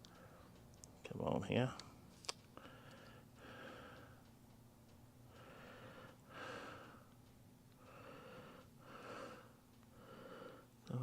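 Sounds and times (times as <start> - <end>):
faint slow breathing: 0.0 - 0.6, 2.5 - 4.3, 5.2 - 10.8.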